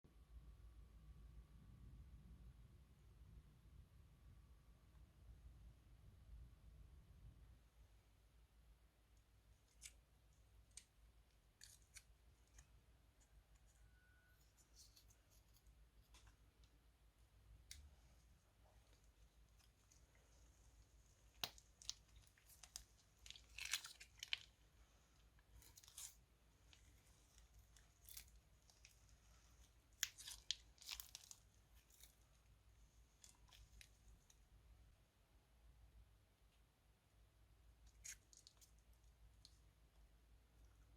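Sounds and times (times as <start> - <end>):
slime crunching and crackling: 21.2 - 32.2.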